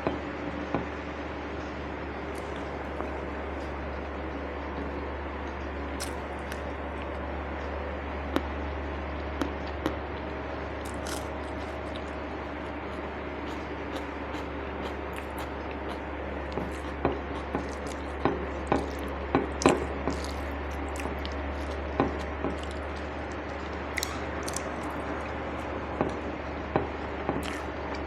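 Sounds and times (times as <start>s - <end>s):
low hum: 0.0s - 28.0s
wet chewing: 2.1s - 3.8s, 5.5s - 7.4s, 9.1s - 26.2s, 27.4s - 28.0s.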